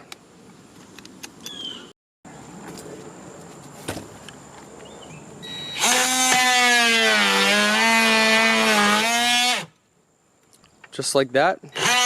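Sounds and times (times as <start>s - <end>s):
oscillating multitool buzzing: 5.4s - 9.7s.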